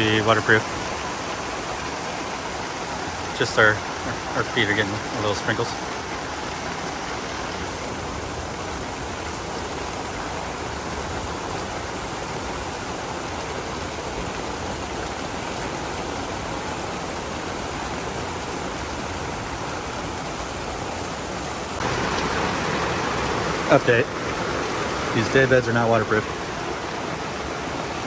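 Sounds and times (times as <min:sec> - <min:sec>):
heavy rain falling: 0:00.0 - 0:28.0.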